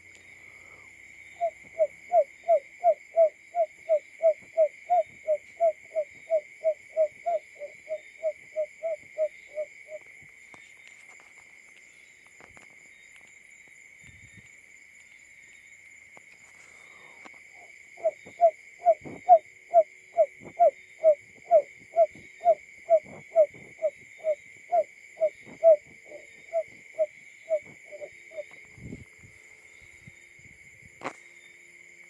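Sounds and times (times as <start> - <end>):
bird low hooting call: 0.4 - 10.0, 17.6 - 28.6.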